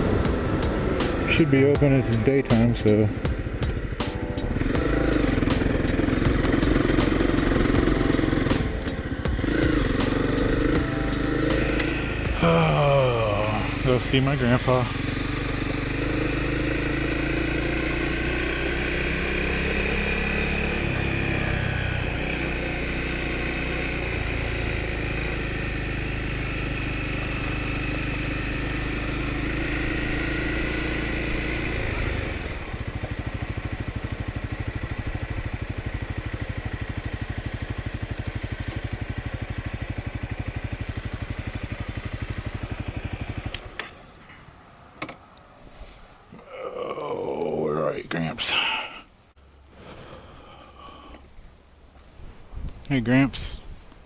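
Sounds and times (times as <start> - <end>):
motorcycle engine running: 0.0 - 44.6.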